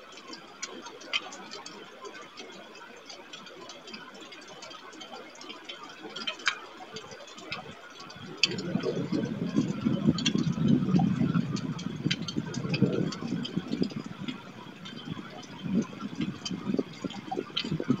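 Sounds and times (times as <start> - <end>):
raindrops ticking on microphone: 0.0 - 18.0
low rattling rumble: 8.2 - 18.0.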